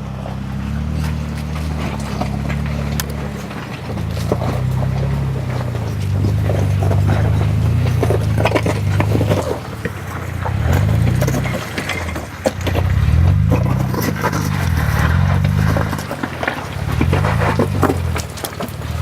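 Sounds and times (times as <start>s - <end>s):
knocks and scrapes: 0.0s - 19.0s
off-road vehicle engine revving: 0.0s - 19.0s.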